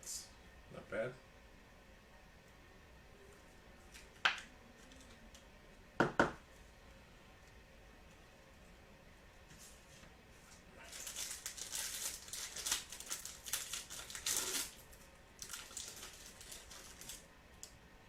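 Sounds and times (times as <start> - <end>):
foil wrapper crinkling: 10.8 - 17.7.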